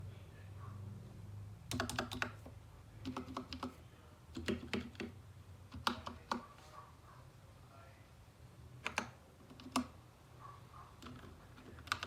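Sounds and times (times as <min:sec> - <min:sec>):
mechanical keyboard typing: 0:01.7 - 0:06.4, 0:08.8 - 0:10.0, 0:11.0 - 0:12.0.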